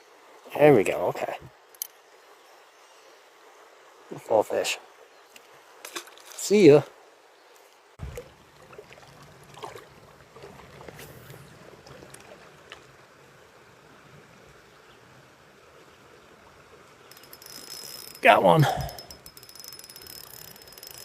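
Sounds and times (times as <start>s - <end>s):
small splashes: 8.0s - 13.0s.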